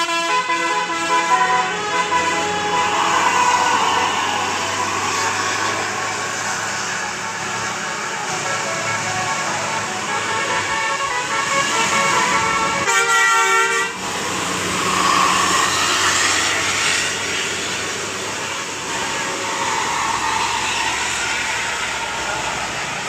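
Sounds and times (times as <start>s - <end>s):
bus musical horn: 0.0s - 14.6s
vehicle noise: 0.0s - 23.0s.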